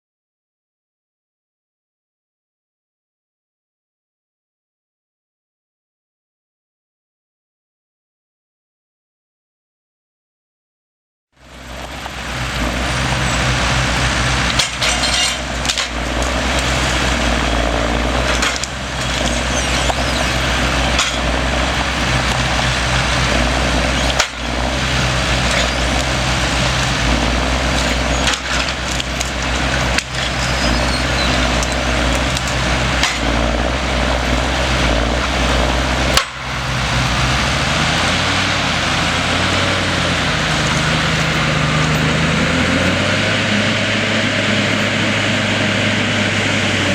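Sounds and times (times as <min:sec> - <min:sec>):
diesel engine running: 0:11.4 - 0:46.9
wood chipper crackling and splintering: 0:11.4 - 0:46.9.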